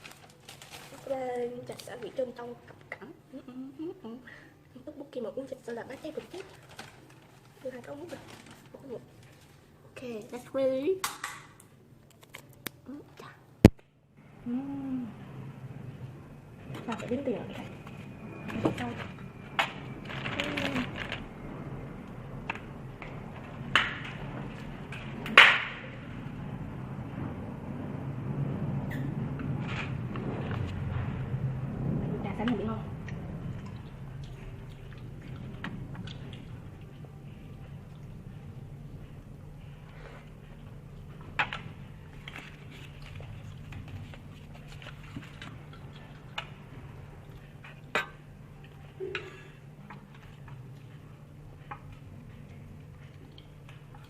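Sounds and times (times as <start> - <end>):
low hum: 13.6 - 54.0.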